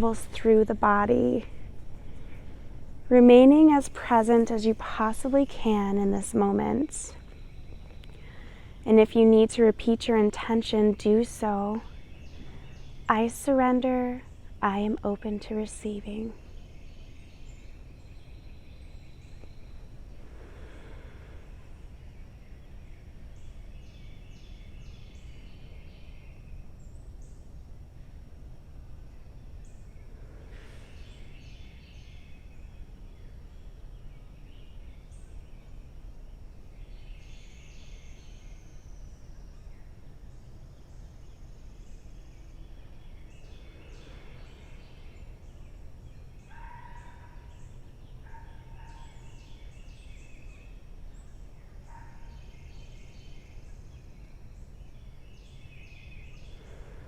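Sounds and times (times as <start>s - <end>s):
low rumble: 0.0s - 9.2s
birds chirping: 0.0s - 28.3s, 29.0s - 57.0s.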